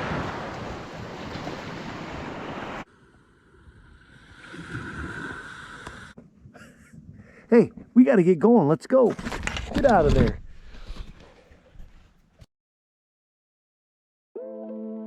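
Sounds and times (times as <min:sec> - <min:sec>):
small lake waves: 0:00.0 - 0:06.2.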